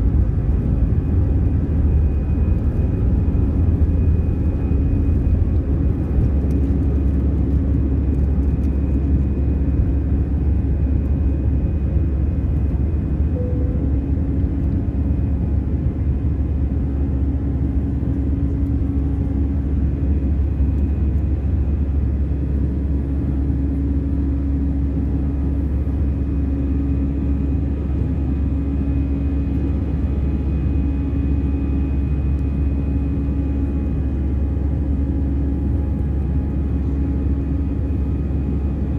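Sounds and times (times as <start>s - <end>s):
airplane cabin engine rumble: 0.0s - 38.9s
faint high whine: 13.1s - 38.9s.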